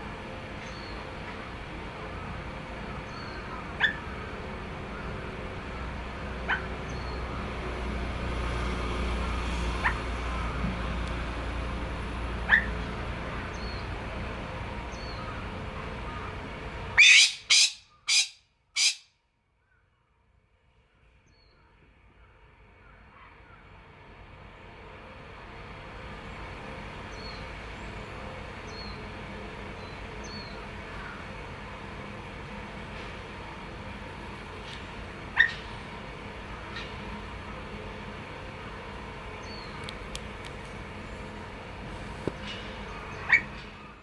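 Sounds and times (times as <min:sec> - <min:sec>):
pheasant call notes: 0:17.0 - 0:19.1
shrill harsh pheasant call: 0:17.0 - 0:19.1.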